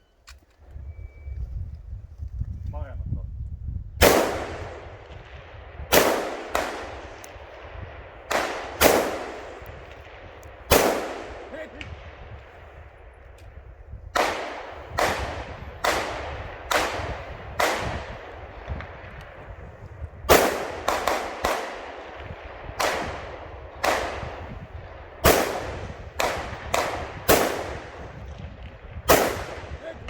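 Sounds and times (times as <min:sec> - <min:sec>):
rifle shots echoing: 0:04.0 - 0:30.0.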